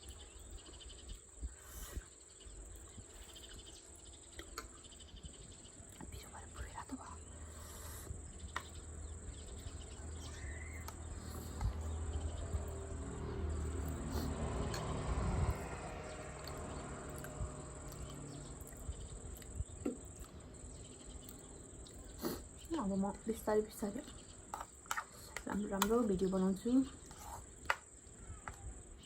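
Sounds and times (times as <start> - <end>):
insects trilling: 0.0 - 14.9, 15.9 - 29.0
low rumble: 8.9 - 20.3.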